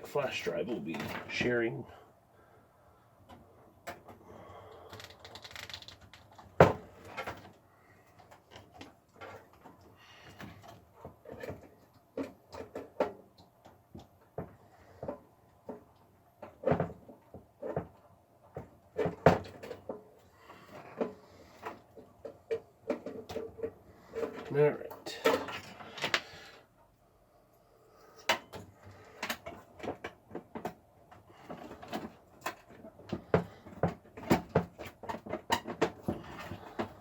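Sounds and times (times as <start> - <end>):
cables rustling: 3.2 - 18.0
clicks and knocks in computer case: 31.5 - 37.0.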